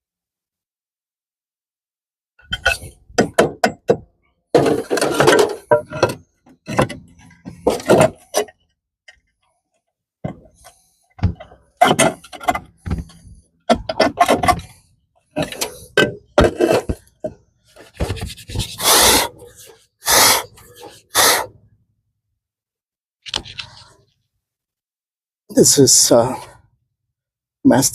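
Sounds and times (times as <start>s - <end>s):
roof tiles scraping and knocking: 2.4s - 8.7s, 10.2s - 19.8s.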